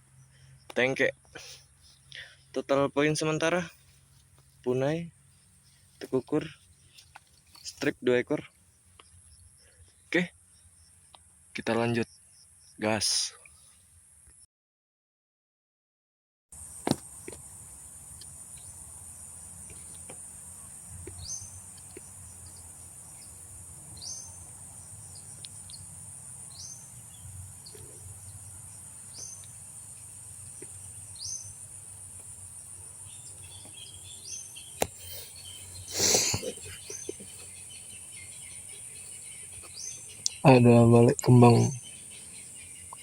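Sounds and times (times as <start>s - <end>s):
insects droning: 0.0s - 14.4s, 16.6s - 43.0s
birds calling: 16.6s - 43.0s.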